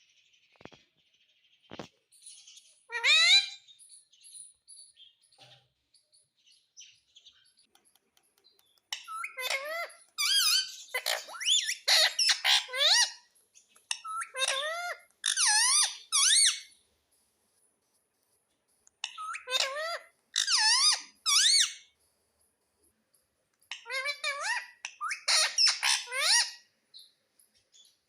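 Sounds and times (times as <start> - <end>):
parrot squeaky calls: 2.4 - 4.5, 8.9 - 16.8, 19.0 - 22.0, 23.7 - 27.1.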